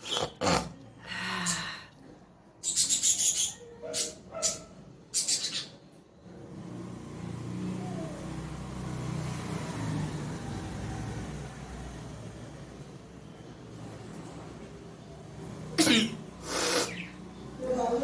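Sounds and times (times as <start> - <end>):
person sneezing: 15.8 - 17.0.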